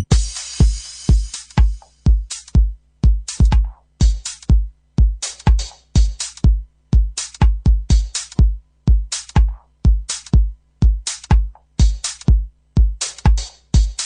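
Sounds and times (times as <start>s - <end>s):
electronic dance music: 0.0s - 1.8s.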